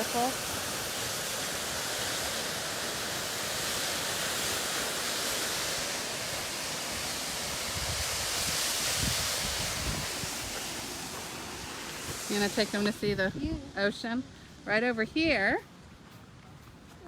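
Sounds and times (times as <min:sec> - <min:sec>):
waterfall roaring: 0:00.0 - 0:13.1
wind buffeting microphone: 0:07.4 - 0:11.4, 0:12.0 - 0:14.0.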